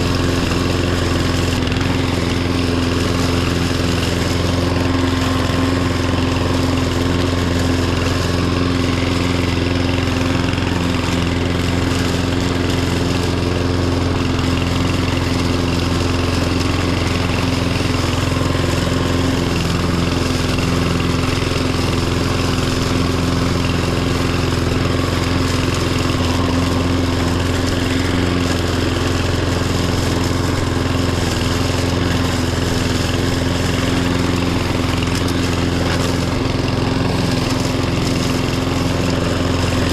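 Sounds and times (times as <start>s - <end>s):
riding mower engine running: 0.0s - 39.9s.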